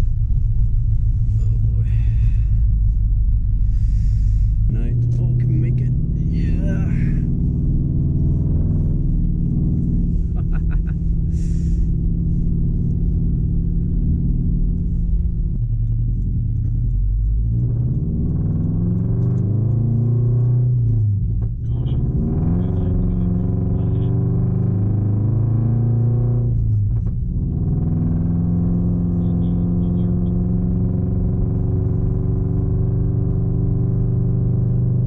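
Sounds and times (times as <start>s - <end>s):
car engine revving through gears: 3.6s - 35.0s.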